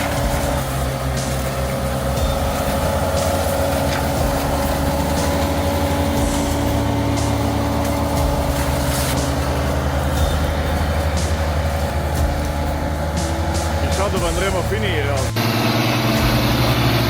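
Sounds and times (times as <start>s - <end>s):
heavy vehicle engine under load: 0.0s - 17.0s
steady whine: 0.0s - 17.0s.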